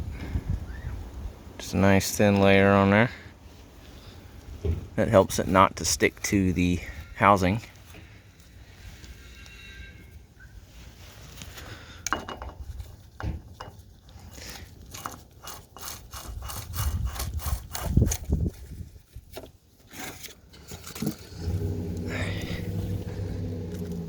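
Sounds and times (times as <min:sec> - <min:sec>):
oil filter scraping: 0:05.1 - 0:24.0.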